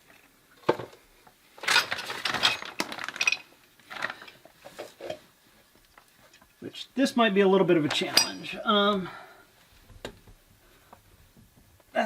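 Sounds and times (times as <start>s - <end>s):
metal tools clinking and clattering: 1.6s - 4.4s, 7.9s - 8.6s.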